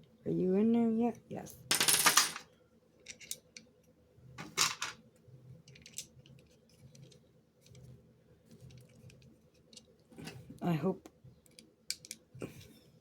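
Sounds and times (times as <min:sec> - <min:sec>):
light clicks of metal parts: 0:11.4 - 0:12.8.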